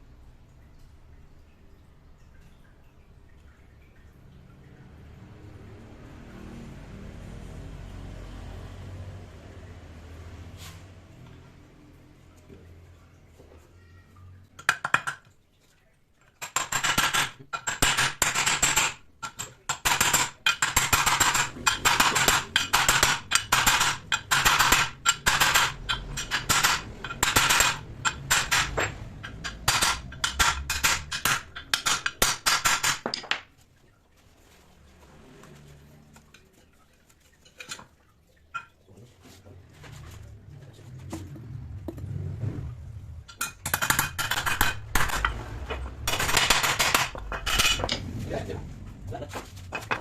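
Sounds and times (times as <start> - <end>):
metal clinking and tapping: 16.2 - 33.5, 43.3 - 48.1, 49.7 - 50.0.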